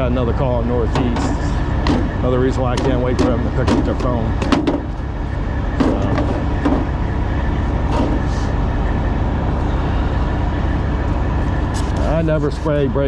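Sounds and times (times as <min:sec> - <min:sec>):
diesel truck engine idling: 0:00.0 - 0:13.0.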